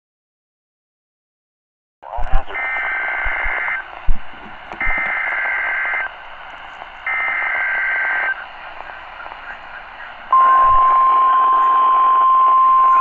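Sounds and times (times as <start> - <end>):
radio receiver hiss: 2.0 - 13.0.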